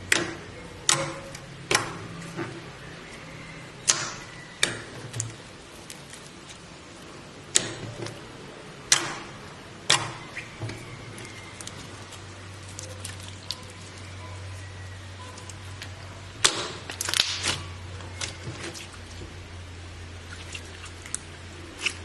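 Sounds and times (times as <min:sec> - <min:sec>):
slime popping and clicking: 0:16.4 - 0:17.6.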